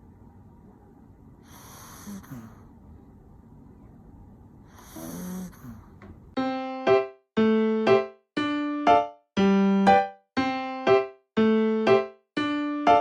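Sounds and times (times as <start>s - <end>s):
dog snoring: 1.4s - 2.6s, 4.7s - 6.0s
piano music: 6.4s - 13.0s.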